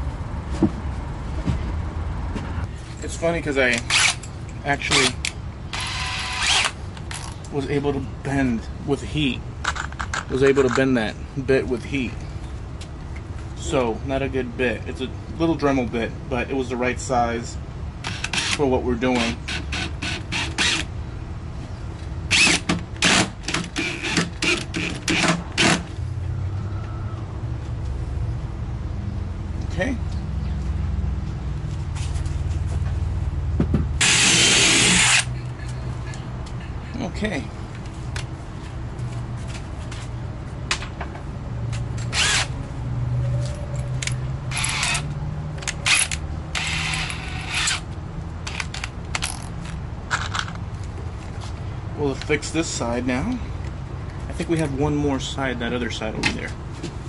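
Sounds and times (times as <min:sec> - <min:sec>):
power drill drilling into plywood: 0:05.8 - 0:06.8, 0:34.0 - 0:35.3.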